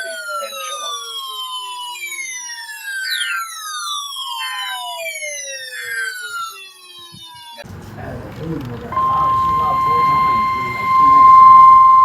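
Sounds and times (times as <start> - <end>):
buzzy digital header bursts: 8.9 - 12.0
siren-like descending sweep: 8.9 - 12.0.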